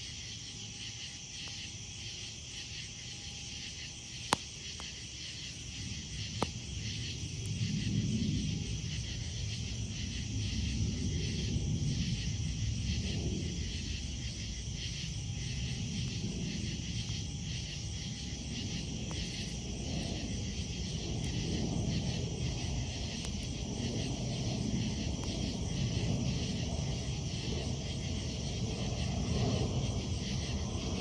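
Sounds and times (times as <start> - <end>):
insects chirping: 0.0 - 31.0
campfire crackling pops: 4.1 - 9.2, 15.6 - 29.1.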